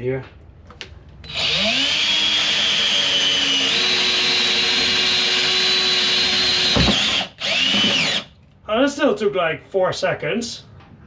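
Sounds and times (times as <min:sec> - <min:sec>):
electric drill boring through hull: 0:01.3 - 0:08.3.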